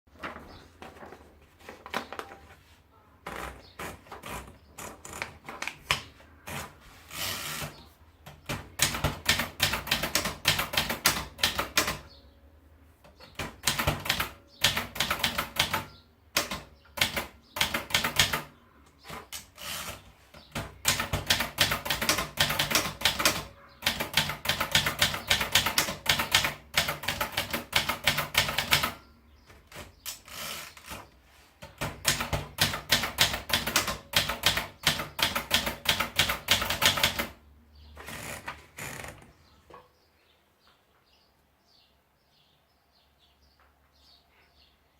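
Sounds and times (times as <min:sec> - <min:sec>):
typewriter key strikes: 0:20.6 - 0:29.0.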